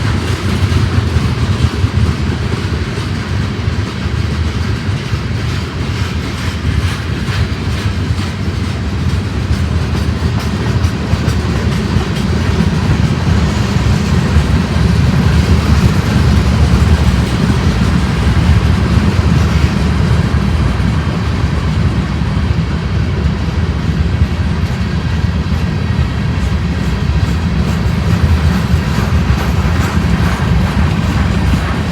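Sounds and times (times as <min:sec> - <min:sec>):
wheels clattering over rails: 0:00.0 - 0:22.8, 0:23.9 - 0:31.9
freight train rumbling past: 0:00.0 - 0:31.9.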